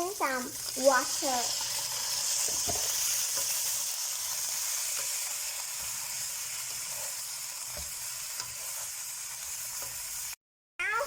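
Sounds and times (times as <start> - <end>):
food sizzling in a pan: 0.0 - 11.0
faint stirring knocks: 2.5 - 3.0.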